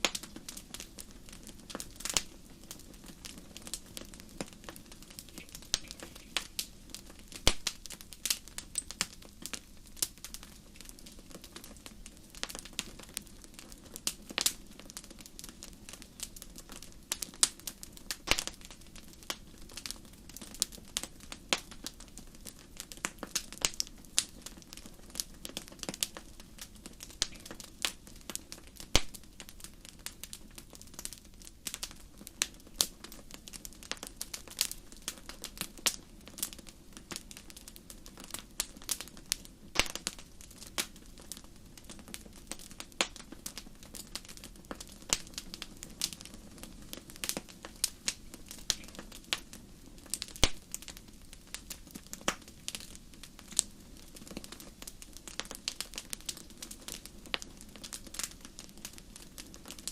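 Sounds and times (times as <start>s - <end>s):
pops and snaps of fire: 0.0s - 59.9s
wood fire crackling: 0.0s - 59.9s.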